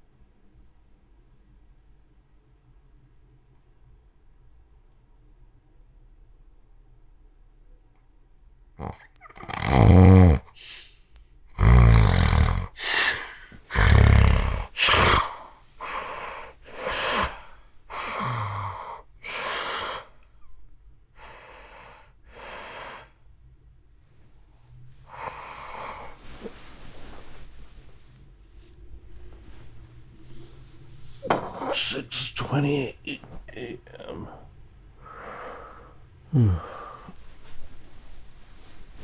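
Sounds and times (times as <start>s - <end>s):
man snoring: 8.8s - 10.9s, 11.6s - 20.1s, 35.0s - 37.2s.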